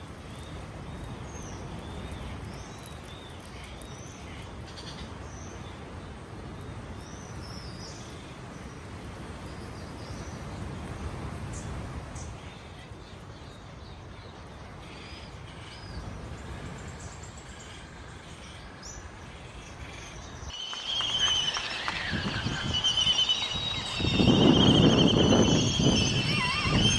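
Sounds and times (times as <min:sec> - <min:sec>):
seabirds calling: 0:20.3 - 0:26.9.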